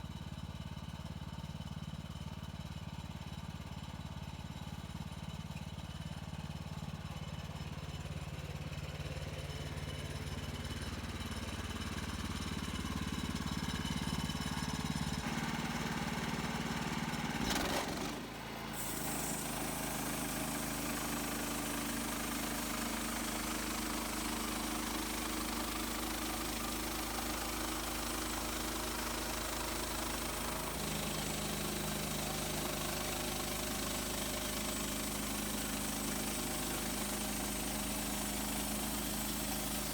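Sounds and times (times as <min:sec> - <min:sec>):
gasoline engine running: 0:11.0 - 0:39.9.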